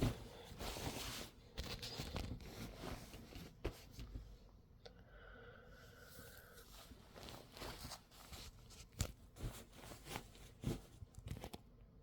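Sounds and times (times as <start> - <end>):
fabric rustling: 0.0 - 3.9, 6.6 - 11.6.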